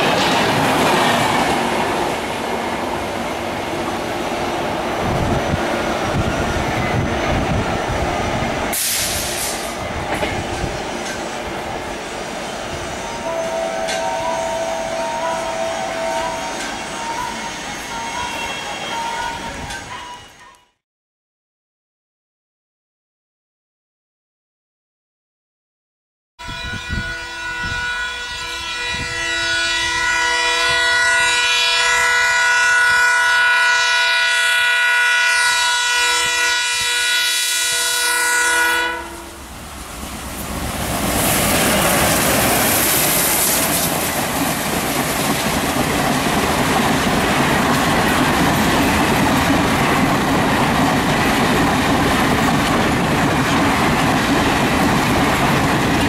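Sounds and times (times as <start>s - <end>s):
train wheels clattering: 8.6s - 11.5s
locomotive horn blast: 13.0s - 19.5s, 26.4s - 39.5s.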